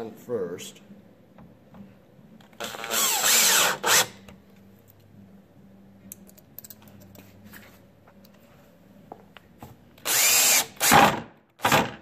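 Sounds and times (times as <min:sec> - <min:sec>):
power drill driving screw: 0:02.6 - 0:04.2, 0:10.0 - 0:12.0.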